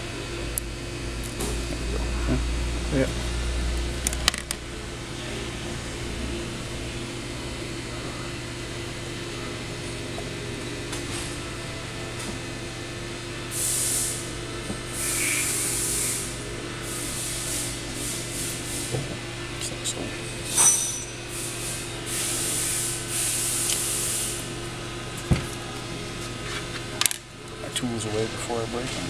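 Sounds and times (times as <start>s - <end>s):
steady low hum: 0.0s - 29.0s
short hissing bursts: 13.5s - 14.2s, 15.0s - 16.3s, 21.4s - 24.4s.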